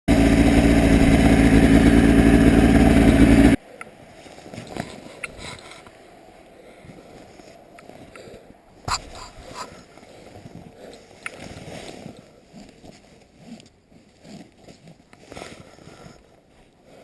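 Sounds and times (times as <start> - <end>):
paramotor engine running: 0.1 - 3.6.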